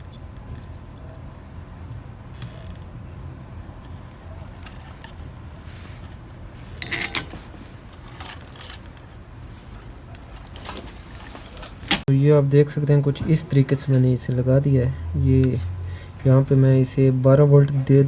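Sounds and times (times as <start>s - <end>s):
low steady hum: 0.0s - 18.0s
metal parts clicking and rattling: 6.8s - 7.4s, 8.0s - 9.0s.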